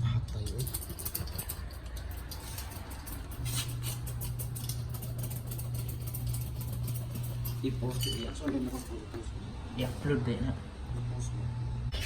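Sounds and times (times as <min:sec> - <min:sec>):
light clicks and scratches: 0:00.0 - 0:09.3
steady low hum: 0:00.0 - 0:12.0.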